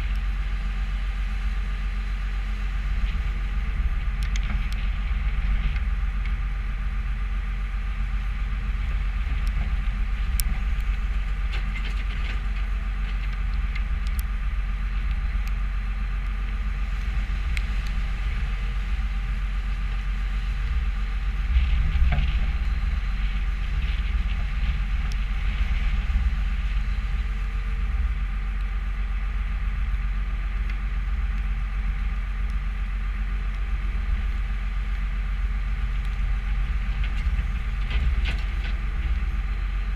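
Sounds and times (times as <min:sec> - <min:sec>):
diesel engine running under load: 0:00.0 - 0:39.9
machine rattles and clanks: 0:08.7 - 0:14.2, 0:21.4 - 0:27.6, 0:35.9 - 0:39.6.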